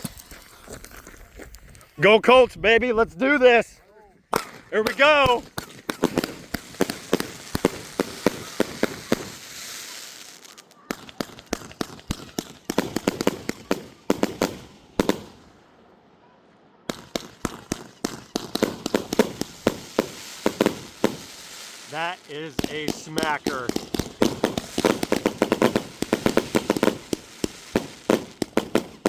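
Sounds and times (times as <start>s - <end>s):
firework cake shots cracking: 4.3s - 15.4s, 16.9s - 29.0s.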